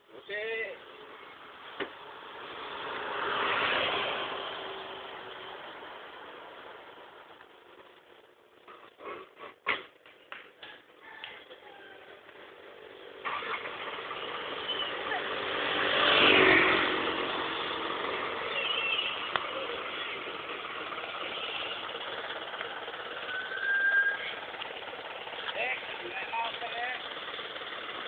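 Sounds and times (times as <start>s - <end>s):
steady traffic noise: 0.0s - 28.0s
vehicle passing close by: 1.5s - 7.3s, 12.8s - 28.0s.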